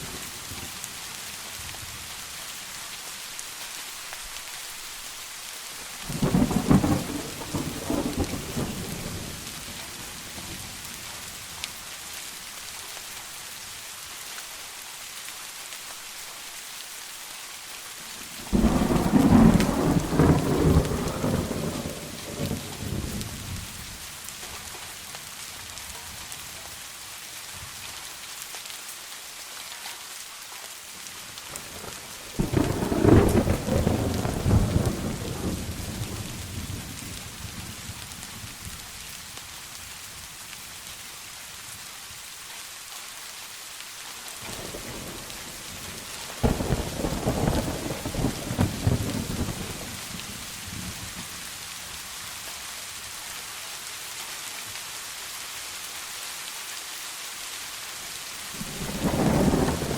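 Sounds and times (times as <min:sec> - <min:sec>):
steady rain falling: 0:00.0 - 0:59.9
thunder rumbling: 0:06.1 - 0:11.0, 0:18.4 - 0:24.0, 0:31.5 - 0:38.2, 0:44.5 - 0:51.5, 0:58.5 - 0:59.9.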